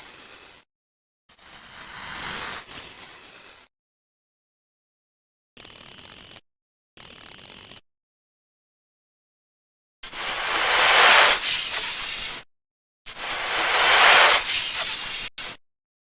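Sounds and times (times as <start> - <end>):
snake hissing: 0.0 - 0.6, 1.4 - 3.7, 10.0 - 12.4, 13.1 - 15.6.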